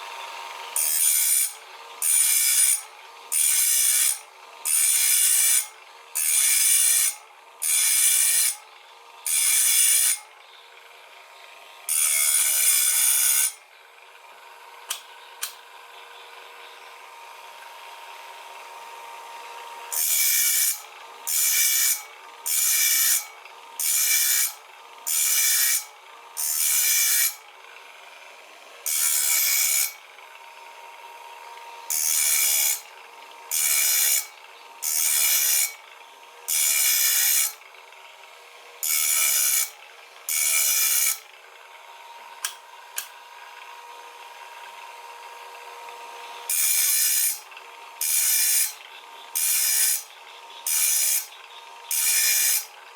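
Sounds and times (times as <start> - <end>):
grinding wheel rasping on saw teeth: 0.0 - 10.3, 11.9 - 13.6, 19.8 - 30.3, 30.9 - 41.4, 45.9 - 52.9.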